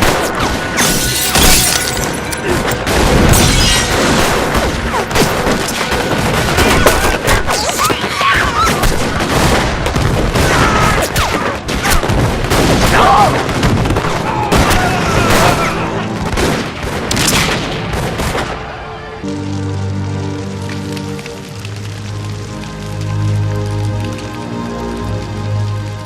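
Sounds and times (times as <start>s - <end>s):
film music: 0.0s - 7.6s, 13.4s - 26.0s
gunshots: 0.0s - 18.8s.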